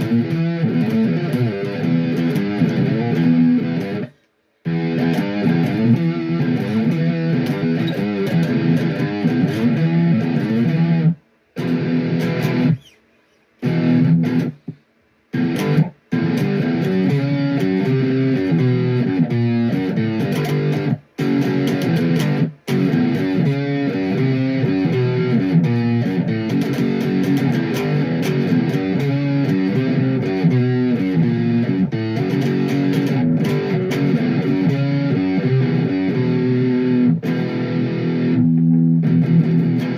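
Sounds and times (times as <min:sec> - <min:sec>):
distorted electric guitar riffs: 0:00.0 - 0:39.9.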